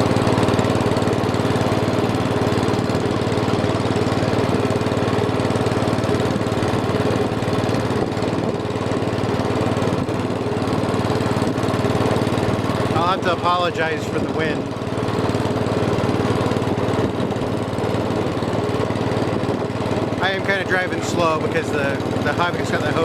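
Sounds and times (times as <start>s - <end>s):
compressor pumping: 0.0s - 23.0s
single-cylinder engine running: 0.0s - 23.0s
wind on microphone: 7.9s - 8.8s.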